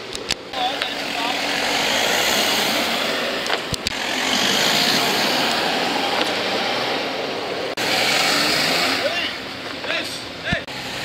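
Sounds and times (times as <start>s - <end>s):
car engine driving off: 0.5s - 11.0s
sharp clicks: 3.4s - 4.0s.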